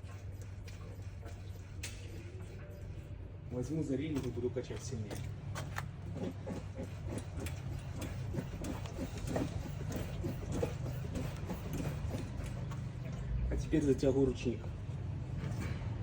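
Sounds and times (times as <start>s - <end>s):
car chassis creaking and squeaking: 4.2s - 13.2s.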